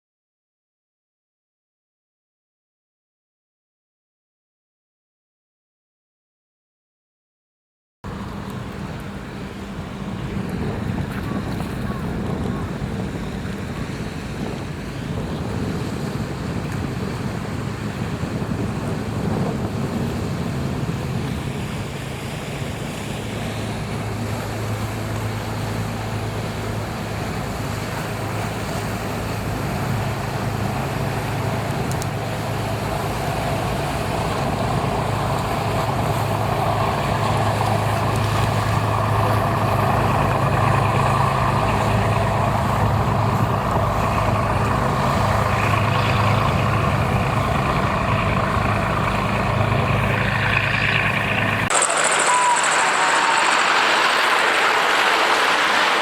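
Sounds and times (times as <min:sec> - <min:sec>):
boat engine droning: 0:08.0 - 0:56.0
wind noise on microphone: 0:08.6 - 0:51.7.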